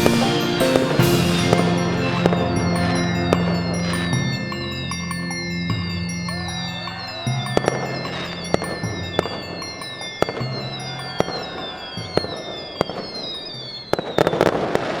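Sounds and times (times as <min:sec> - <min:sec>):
music: 0:00.0 - 0:12.6
firework whistles falling in pitch: 0:06.3 - 0:14.9.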